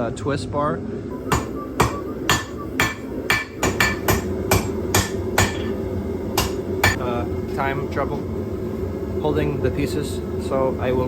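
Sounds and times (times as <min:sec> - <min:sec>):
steady background hum: 0:00.0 - 0:11.0
hammer blows on hot steel: 0:01.1 - 0:07.1.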